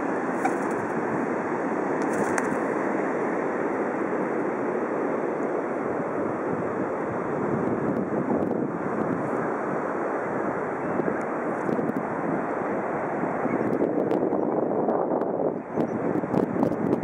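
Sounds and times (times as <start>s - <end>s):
ocean surf rushing: 0.0s - 13.5s
wind on microphone: 0.0s - 17.0s.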